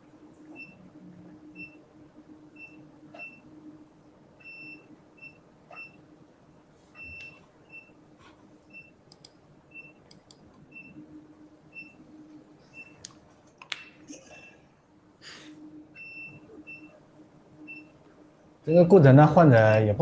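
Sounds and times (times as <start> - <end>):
faint steady hum: 0.0 - 20.0
medical equipment beeps: 0.5 - 0.8, 1.5 - 1.8, 2.5 - 3.5, 4.4 - 6.0, 8.7 - 9.0, 10.7 - 11.0, 11.7 - 12.1, 12.7 - 13.0, 15.9 - 17.0, 17.6 - 18.0, 18.7 - 19.0.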